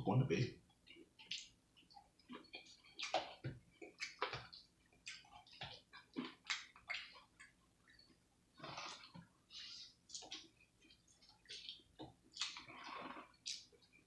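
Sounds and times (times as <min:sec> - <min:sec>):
mouth smacks: 0:02.3 - 0:07.3, 0:11.4 - 0:13.7
wet crunchy chewing: 0:08.6 - 0:14.0.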